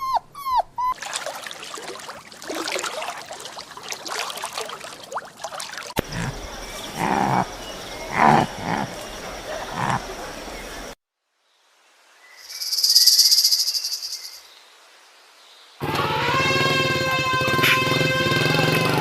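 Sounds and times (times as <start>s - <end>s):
short animal calls: 6.0s - 10.2s
high pulsed insect trill: 6.0s - 11.0s, 12.4s - 14.5s.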